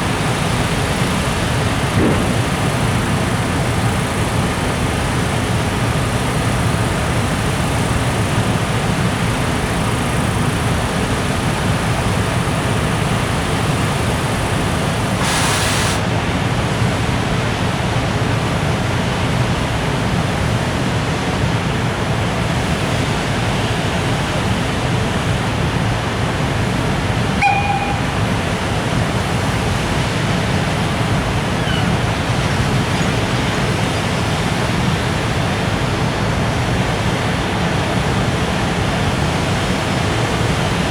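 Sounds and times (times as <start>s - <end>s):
freight train rolling on rails: 0.0s - 16.1s, 27.2s - 40.9s
brief hiss: 15.2s - 16.0s
short beep: 27.4s - 28.5s.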